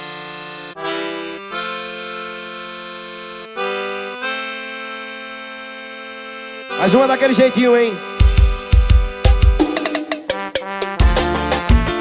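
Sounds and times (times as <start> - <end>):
accordion chords: 0.0 - 8.8.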